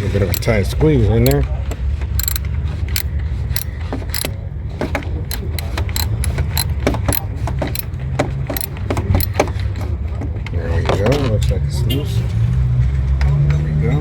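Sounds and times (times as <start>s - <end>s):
ratchet clicking: 2.2s - 2.4s, 3.0s - 4.3s, 5.3s - 7.9s, 8.6s - 9.3s.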